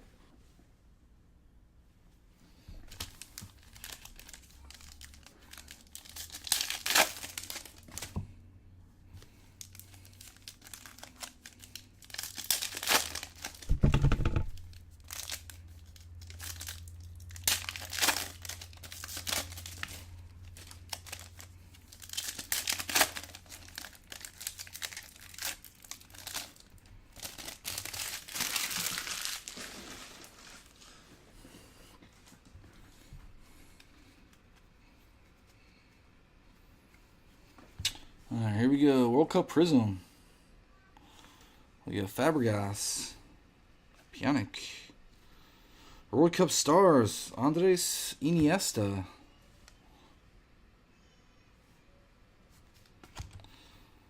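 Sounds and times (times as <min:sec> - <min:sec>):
packaging torn and crinkled: 0:02.9 - 0:08.2, 0:09.6 - 0:13.7, 0:14.5 - 0:30.8
dull thump: 0:13.7 - 0:14.6.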